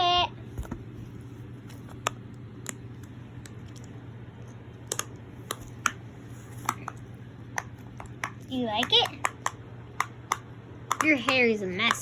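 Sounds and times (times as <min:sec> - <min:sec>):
steady low hum: 0:00.0 - 0:12.0
plastic toy clicks and taps: 0:07.6 - 0:12.0.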